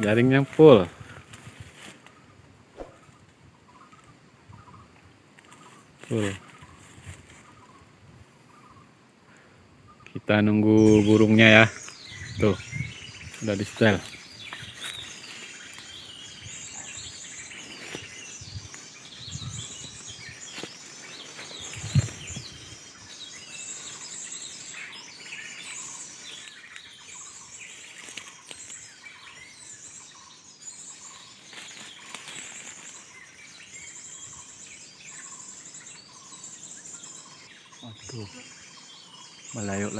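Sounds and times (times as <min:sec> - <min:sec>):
birds chirping and trilling: 0:00.0 - 0:39.9.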